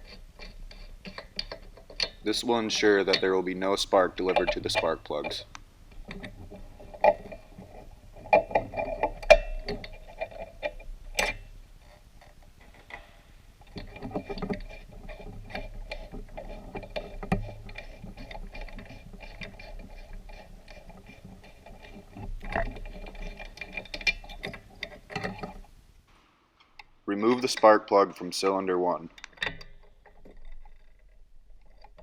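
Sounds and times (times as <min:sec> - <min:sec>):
hand tools clicking on metal: 0:00.0 - 0:11.4.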